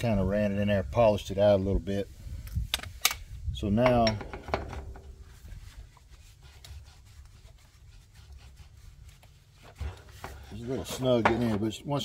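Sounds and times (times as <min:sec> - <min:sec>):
metal rubbing and scraping: 0:03.7 - 0:11.8.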